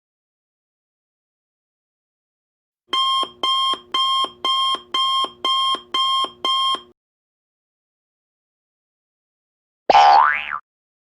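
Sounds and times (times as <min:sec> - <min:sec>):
electronic alarm beeping: 0:02.9 - 0:06.9.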